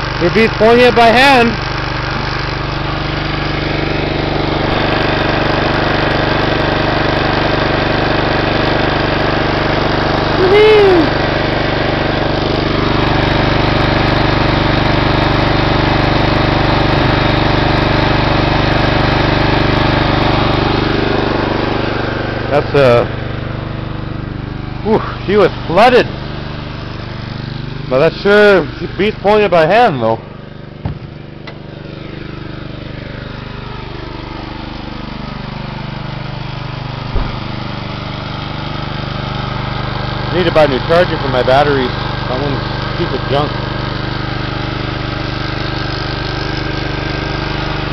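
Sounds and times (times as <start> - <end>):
lawn mower engine running: 0.0 - 47.9
low thump: 30.8 - 31.2, 37.0 - 37.6.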